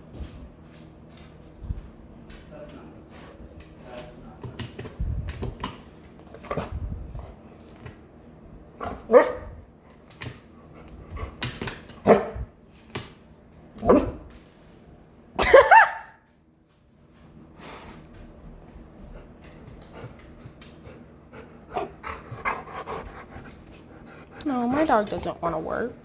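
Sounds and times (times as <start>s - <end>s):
dog barking: 8.9s - 9.5s, 12.0s - 12.4s.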